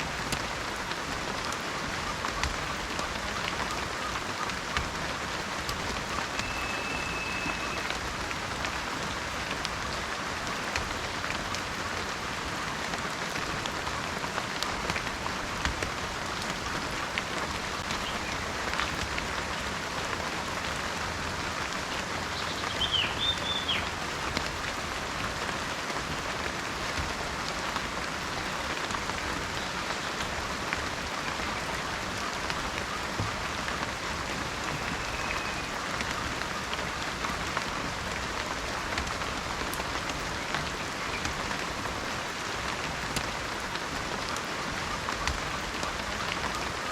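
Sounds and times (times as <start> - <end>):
heavy rain: 0.0 - 46.9
bird whistling: 6.4 - 7.9, 22.5 - 23.8, 34.8 - 35.7
short chirping call: 6.4 - 7.9.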